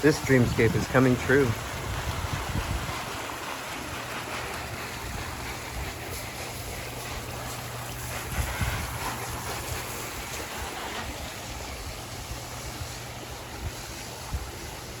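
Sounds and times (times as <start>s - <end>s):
waterfall rushing: 0.0s - 5.8s
wind buffeting microphone: 0.0s - 15.0s.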